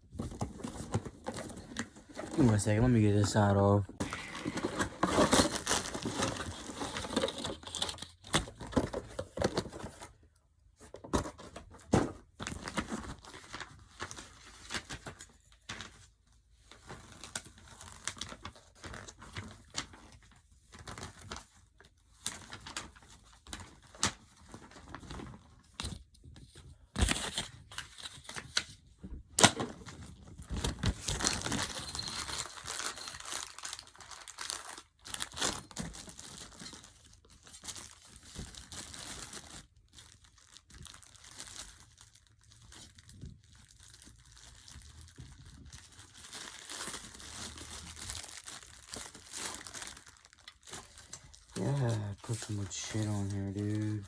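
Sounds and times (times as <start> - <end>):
packaging crinkling: 16.7 - 25.7, 29.8 - 54.0
packing tape tearing and peeling: 30.4 - 53.9.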